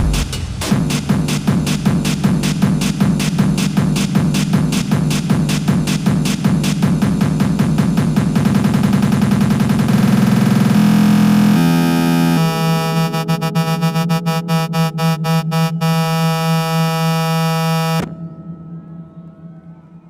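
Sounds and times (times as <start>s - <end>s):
sustained synth chord stuttering: 6.4s - 18.2s.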